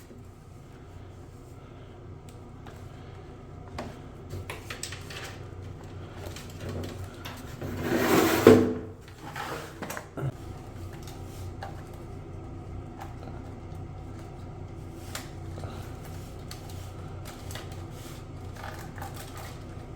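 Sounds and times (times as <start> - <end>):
sliding scraping sound: 7.6 - 9.9.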